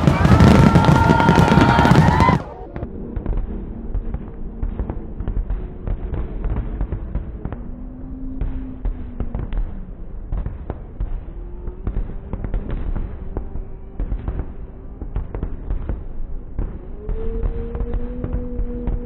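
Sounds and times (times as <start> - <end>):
fireworks bangs and crackling: 0.0 - 19.0.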